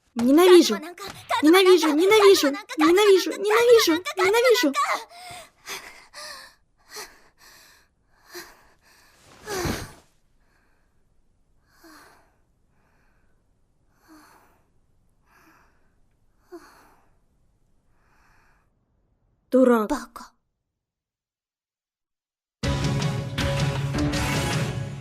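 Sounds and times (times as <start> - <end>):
person breathing heavily: 4.9 - 11.0.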